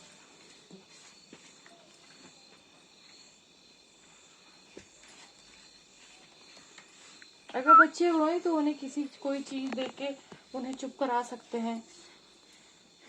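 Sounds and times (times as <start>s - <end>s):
faint high-pitched hiss: 0.0s - 13.0s.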